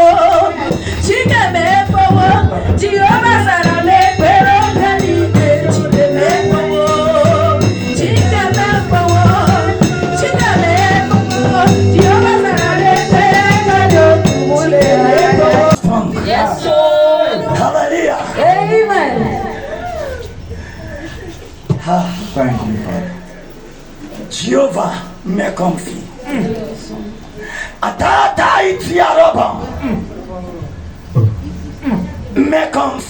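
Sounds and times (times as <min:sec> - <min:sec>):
person singing a melody: 0:00.0 - 0:15.8
shaken rattle percussion: 0:00.0 - 0:15.8
bass line: 0:00.0 - 0:17.7.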